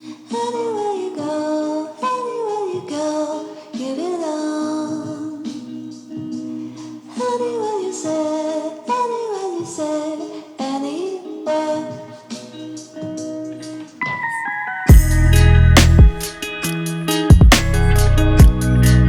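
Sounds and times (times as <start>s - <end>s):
person singing: 0.0s - 19.0s
instrumental accompaniment: 12.6s - 19.0s.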